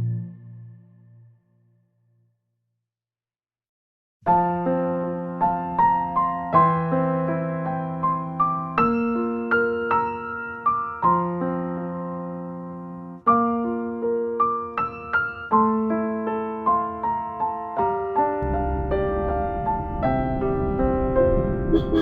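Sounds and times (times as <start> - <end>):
low rumbling noise: 18.4 - 22.0.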